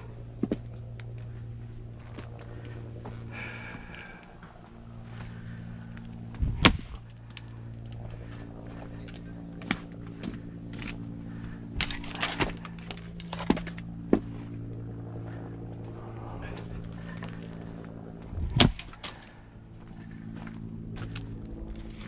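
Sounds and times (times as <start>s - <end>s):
steady low hum: 0.0s - 22.0s
axe splitting log: 6.4s - 7.0s, 11.8s - 14.3s, 18.4s - 19.1s.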